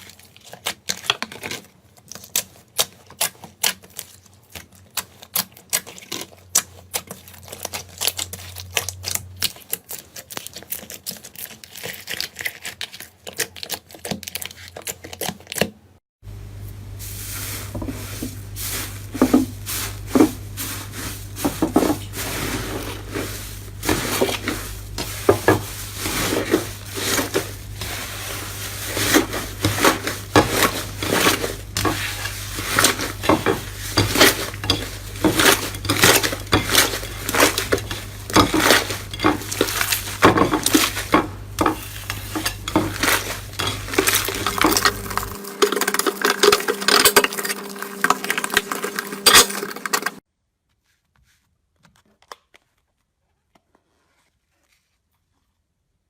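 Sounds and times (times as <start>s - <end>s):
low electrical hum: 16.3s - 50.0s.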